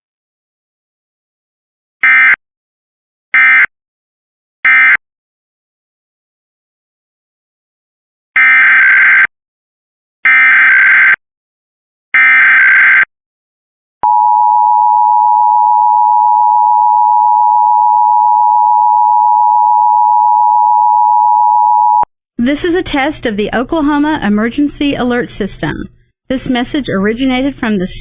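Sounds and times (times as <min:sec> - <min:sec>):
steady two-tone alarm: 0:02.0 - 0:02.4, 0:03.4 - 0:03.7, 0:08.4 - 0:09.3, 0:10.3 - 0:11.2, 0:12.2 - 0:13.1.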